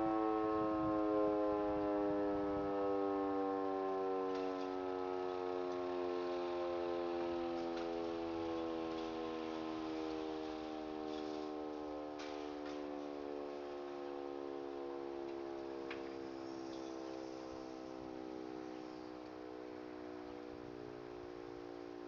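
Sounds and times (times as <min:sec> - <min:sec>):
siren winding down: 0:00.0 - 0:22.0.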